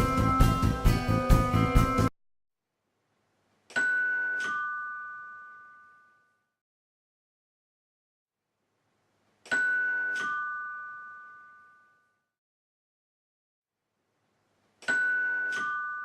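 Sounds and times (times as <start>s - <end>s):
two-tone doorbell chime: 3.8s - 6.5s, 9.5s - 12.3s, 14.8s - 16.0s.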